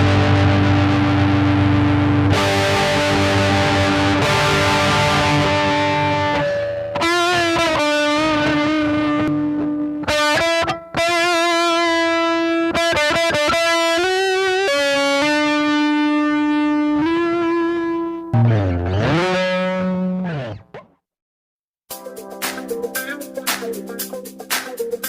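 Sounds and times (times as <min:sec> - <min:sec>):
electric guitar rock lead: 0:00.0 - 0:20.9, 0:21.9 - 0:25.0.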